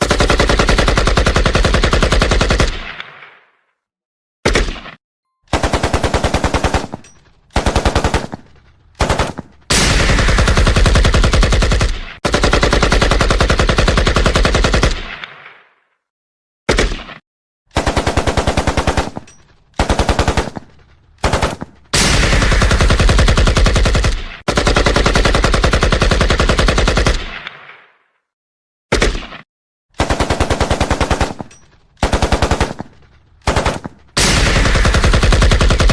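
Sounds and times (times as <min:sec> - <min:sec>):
rifle firing automatic bursts: 0:00.0 - 0:02.9, 0:05.5 - 0:07.0, 0:07.6 - 0:09.4, 0:10.1 - 0:15.2, 0:17.8 - 0:21.6, 0:22.4 - 0:27.4, 0:30.0 - 0:35.9
gunshot echo: 0:09.7 - 0:11.0, 0:22.0 - 0:23.4.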